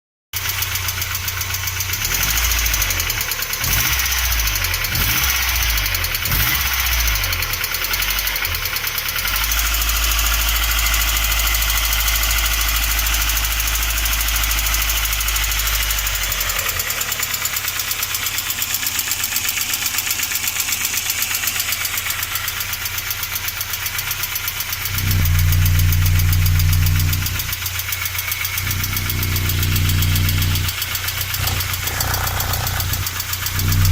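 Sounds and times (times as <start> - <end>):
fast bright engine ticking: 0.4 - 33.9
petrol engine running: 0.5 - 22.9, 24.7 - 33.9
deep loud hum: 24.9 - 33.9.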